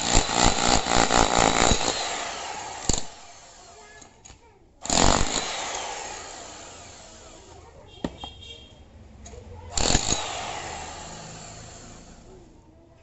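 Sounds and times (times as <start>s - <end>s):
electric demolition hammer bursts: 0.0s - 3.7s, 4.8s - 7.5s, 9.8s - 12.3s.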